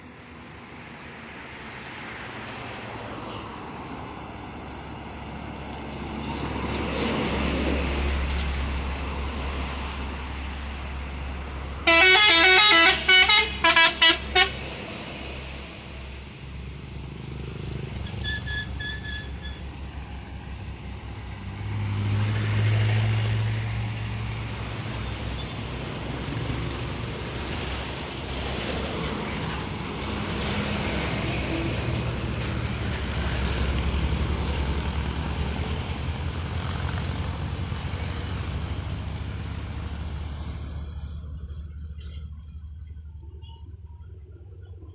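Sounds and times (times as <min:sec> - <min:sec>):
trucks passing with engine rumble: 0:00.0 - 0:44.9
musical truck horn: 0:11.8 - 0:14.8, 0:18.0 - 0:19.7
short horn toot: 0:11.9 - 0:14.6.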